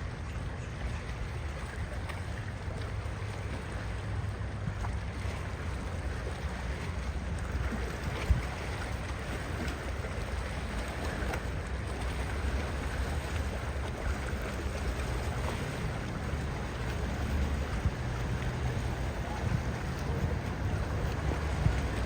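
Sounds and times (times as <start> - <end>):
powerboat engines droning: 0.0 - 22.0
rushing water: 0.0 - 22.0
wind noise: 15.4 - 22.0.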